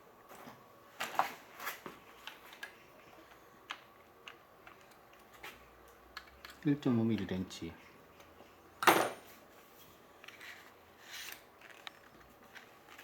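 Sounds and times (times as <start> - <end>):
small metal and plastic parts clicking: 10.2 - 13.0.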